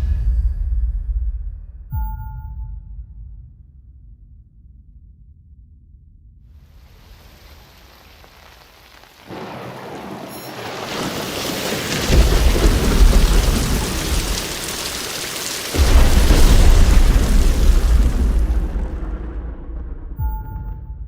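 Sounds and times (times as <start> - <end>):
rain hiss: 6.6 - 19.9
deep rolls of thunder: 6.9 - 21.0.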